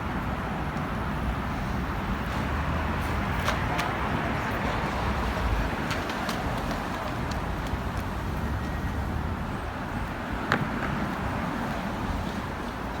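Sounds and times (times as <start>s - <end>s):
street traffic noise: 0.0s - 13.0s.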